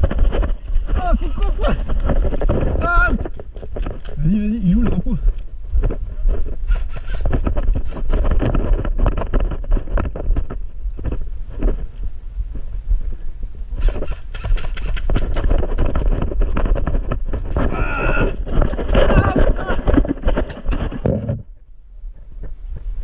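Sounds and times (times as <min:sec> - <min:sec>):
running footsteps: 0:00.0 - 0:21.2
wind rumble on microphone: 0:00.0 - 0:23.0
camera handling noise: 0:03.3 - 0:04.2, 0:06.7 - 0:08.7, 0:13.8 - 0:15.5
gear rattling: 0:06.6 - 0:10.1.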